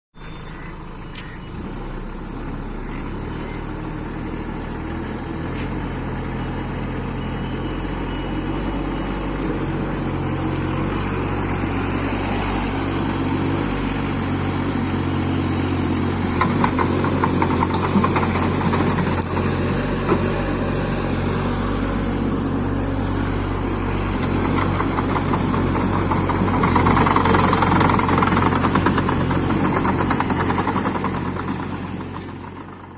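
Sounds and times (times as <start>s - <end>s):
diesel engine running: 0.2s - 32.9s
excavator clattering: 6.9s - 21.3s, 23.6s - 32.9s.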